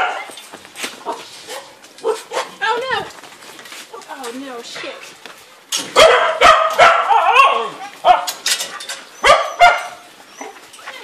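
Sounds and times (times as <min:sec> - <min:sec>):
dogs barking: 0:00.0 - 0:00.4, 0:01.0 - 0:02.6, 0:05.9 - 0:08.5, 0:09.2 - 0:10.7.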